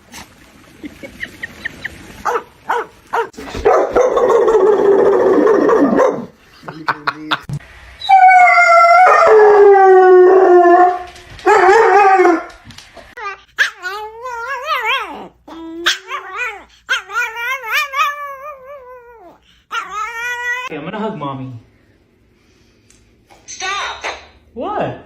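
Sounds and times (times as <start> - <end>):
dog howling: 4.0 - 6.2, 8.0 - 12.6, 13.6 - 20.7.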